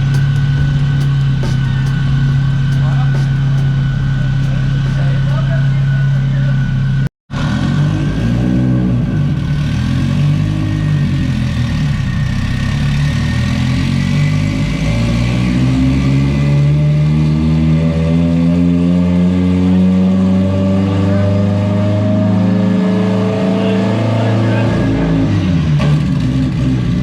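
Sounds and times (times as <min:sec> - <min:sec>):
turbocharged car engine revving: 0:00.0 - 0:27.0.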